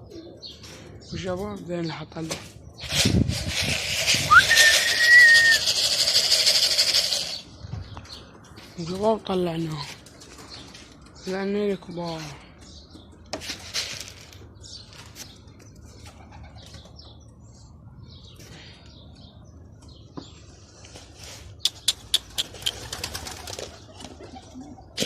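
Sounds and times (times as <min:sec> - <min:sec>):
rustle: 0:13.3 - 0:15.4
sharp wing claps: 0:21.7 - 0:23.7
pigeons flapping wings: 0:22.3 - 0:25.0.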